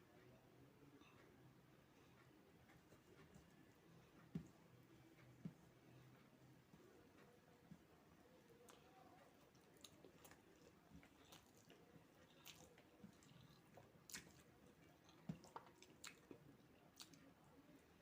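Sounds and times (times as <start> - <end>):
person chewing food: 8.4 - 18.0.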